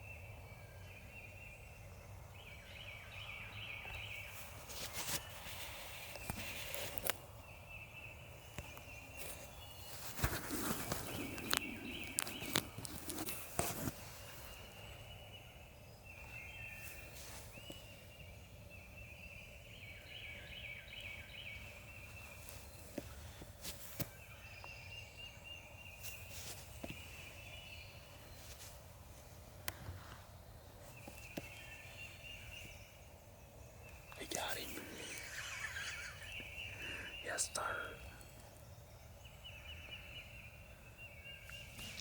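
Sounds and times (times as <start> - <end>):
wild turkeys gobbling: 35.0 - 37.0.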